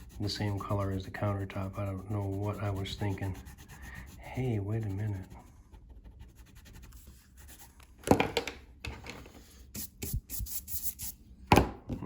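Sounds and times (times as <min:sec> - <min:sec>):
scratchy drawing strokes on paper: 0:00.0 - 0:07.8.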